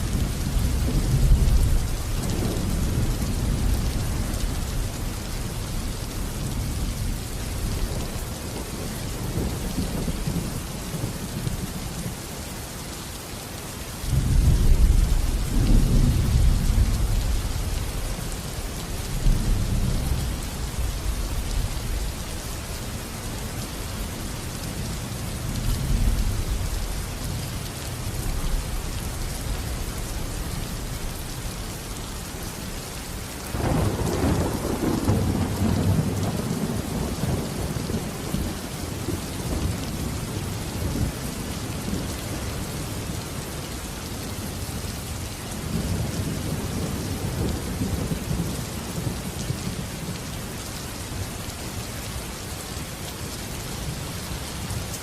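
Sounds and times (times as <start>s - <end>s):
heavy rain: 0.0s - 55.0s
rolling thunder: 33.5s - 41.2s.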